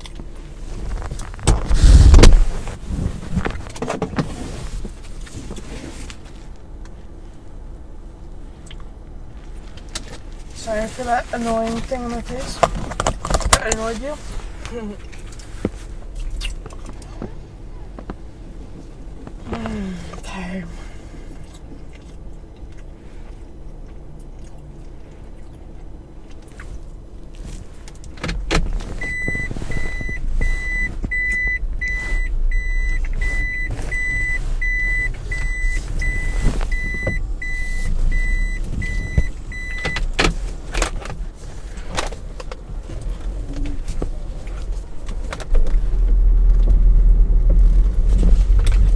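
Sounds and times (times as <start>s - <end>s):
car engine starting and running: 0.0s - 48.9s
dashboard warning chime beeping: 29.0s - 40.3s.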